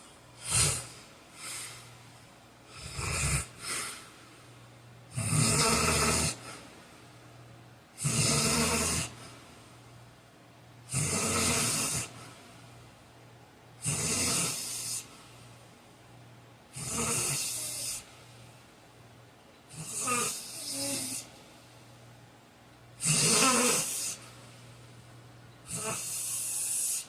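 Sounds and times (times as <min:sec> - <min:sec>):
faint steady hum: 0:00.0 - 0:27.0
man snoring loudly: 0:00.4 - 0:01.6, 0:02.7 - 0:04.0, 0:05.1 - 0:06.6, 0:08.0 - 0:09.2, 0:10.9 - 0:12.2, 0:13.8 - 0:15.1, 0:16.7 - 0:18.0, 0:19.7 - 0:21.3, 0:23.0 - 0:24.2, 0:25.7 - 0:27.0.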